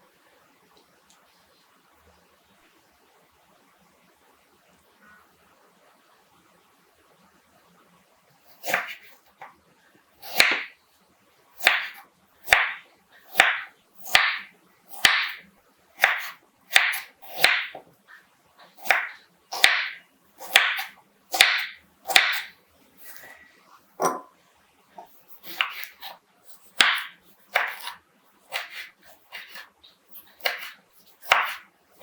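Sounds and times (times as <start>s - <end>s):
knife chopping on cutting board: 8.6s - 9.1s, 10.2s - 10.7s, 11.6s - 15.4s, 16.0s - 17.8s, 18.8s - 22.5s, 24.0s - 24.3s, 25.0s - 29.7s, 30.4s - 31.7s.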